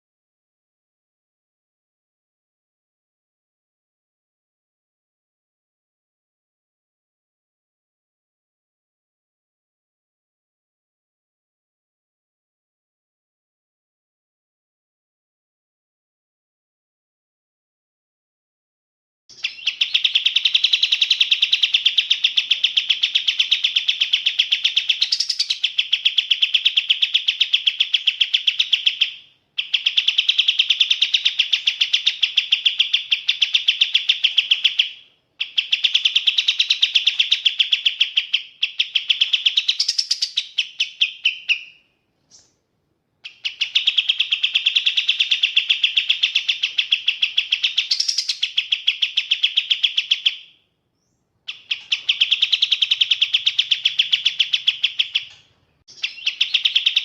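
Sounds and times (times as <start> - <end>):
songbird trilling: 19.3 - 42.6, 43.2 - 57.0.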